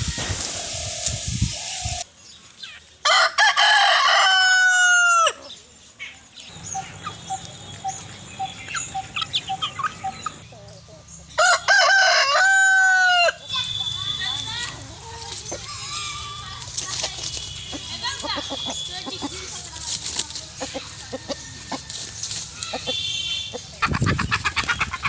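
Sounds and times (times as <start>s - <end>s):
rooster crowing: 3.0s - 5.4s, 11.4s - 13.6s, 20.7s - 23.0s
chicken clucking: 6.5s - 11.0s, 14.5s - 25.0s.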